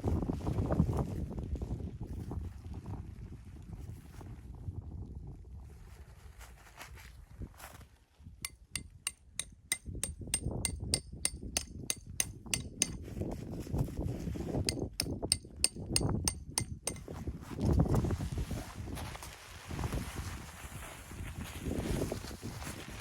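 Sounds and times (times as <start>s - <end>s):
ringing metallic strikes: 14.7s - 17.0s.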